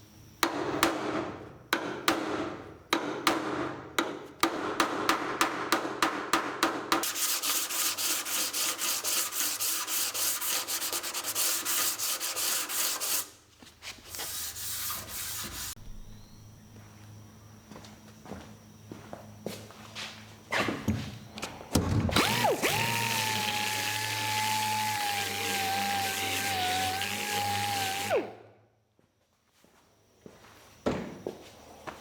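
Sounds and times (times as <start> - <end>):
hand sanding strokes: 7.0 - 15.8.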